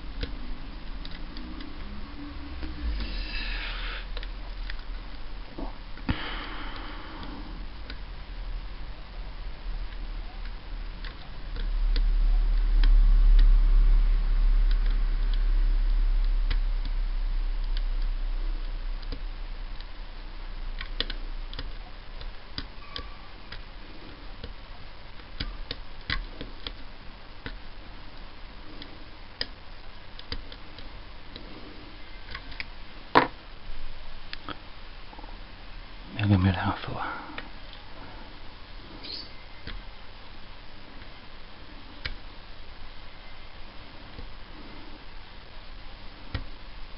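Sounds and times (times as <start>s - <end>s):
low rumble: 0.0s - 25.2s.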